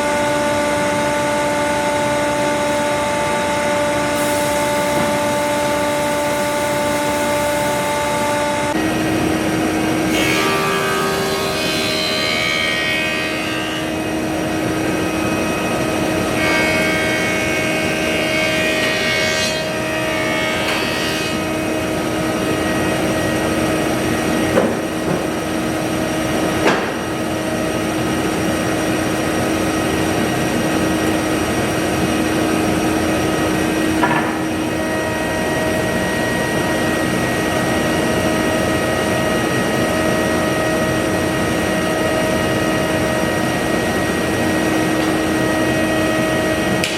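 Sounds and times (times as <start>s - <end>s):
woodshop machinery droning: 0.0s - 46.9s
short knocks: 24.5s - 25.5s, 26.6s - 27.2s.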